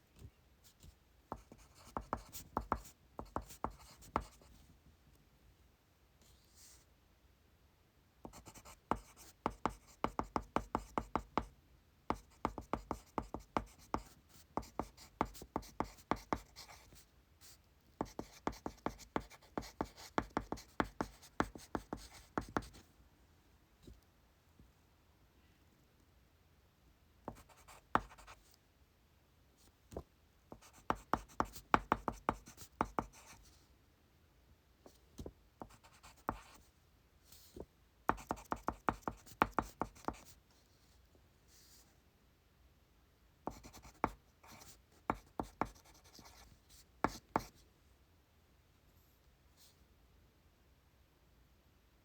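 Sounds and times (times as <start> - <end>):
pencil writing on paper: 1.4 - 4.4, 8.3 - 11.5, 12.1 - 17.0, 18.0 - 22.7, 27.3 - 28.4, 30.5 - 33.4, 35.6 - 36.6, 38.1 - 40.3, 43.5 - 46.4.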